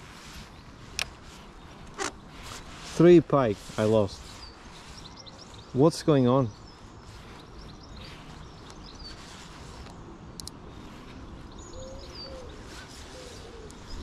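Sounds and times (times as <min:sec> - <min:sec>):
birds chirping high: 0:00.0 - 0:14.0
outdoor background hiss: 0:00.0 - 0:14.0
bird cooing: 0:11.7 - 0:14.0.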